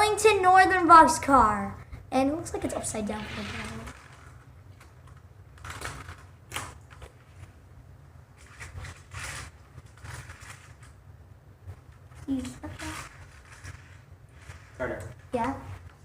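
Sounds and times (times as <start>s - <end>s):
hard plastic rustles and clicks: 3.2s - 7.5s.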